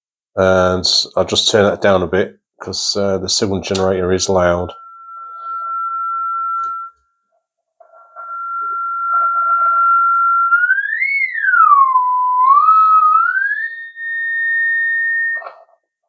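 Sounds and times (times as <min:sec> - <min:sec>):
test tone through loudspeaker: 0:03.5 - 0:07.0, 0:07.8 - 0:15.7.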